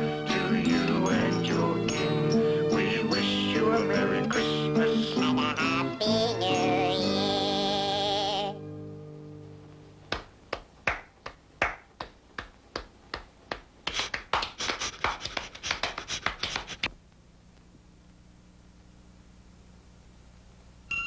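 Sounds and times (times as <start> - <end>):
hand claps: 10.1 - 16.9.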